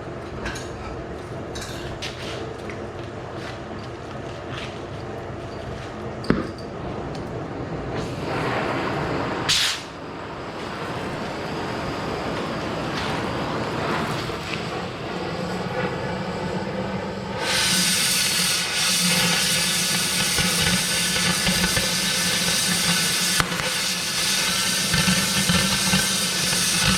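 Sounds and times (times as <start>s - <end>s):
cutting torch hissing: 8.0s - 26.9s.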